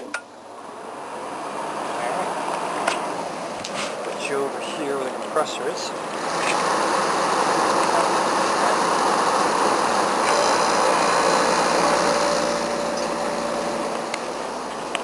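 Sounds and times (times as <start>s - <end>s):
air conditioner fan rushing: 0.0s - 15.0s
compressor hum: 0.0s - 15.0s
steady tones: 4.6s - 15.0s.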